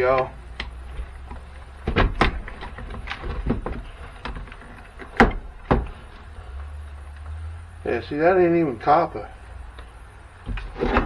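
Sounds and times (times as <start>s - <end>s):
clicks and knocks of tools: 0.0s - 7.4s
faint low hum: 0.0s - 11.0s.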